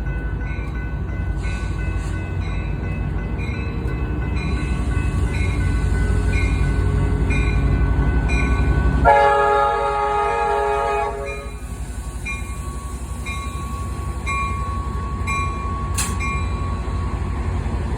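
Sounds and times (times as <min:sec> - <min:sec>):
locomotive engine rumbling: 0:00.0 - 0:17.9
train horn blast: 0:09.0 - 0:11.6.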